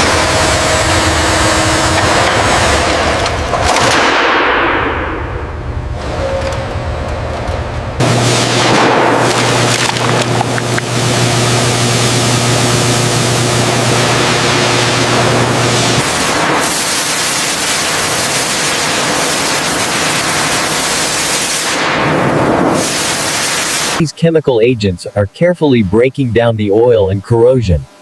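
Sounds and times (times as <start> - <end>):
low machine hum: 0.0 - 28.0
loud hiss of spraying: 13.2 - 24.0.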